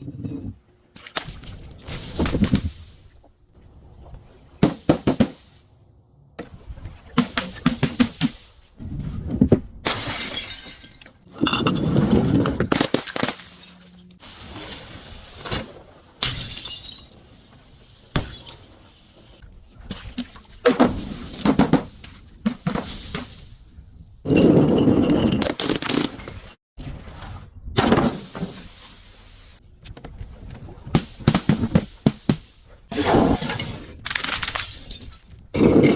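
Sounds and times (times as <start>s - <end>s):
glass shattering: 9.8s - 11.6s, 16.2s - 17.2s, 34.1s - 35.5s
glass bottles being crushed: 9.9s - 11.8s, 16.2s - 17.2s, 34.1s - 35.9s.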